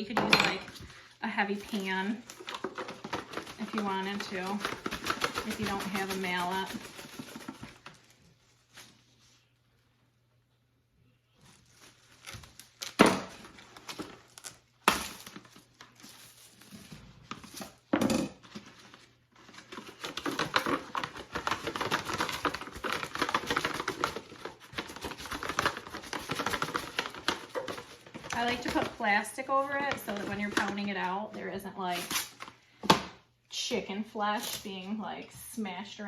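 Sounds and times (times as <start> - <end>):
plastic wrap crinkling: 11.3 - 17.9, 18.5 - 31.3.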